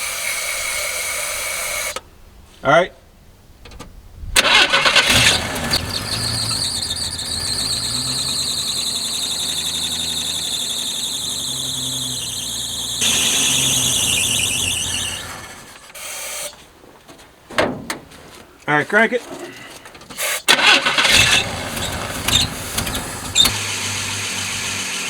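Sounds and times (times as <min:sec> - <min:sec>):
engine cranking on starter: 0:04.4 - 0:16.1, 0:20.1 - 0:25.0
high-pitched squeal: 0:04.5 - 0:16.5, 0:20.5 - 0:25.0.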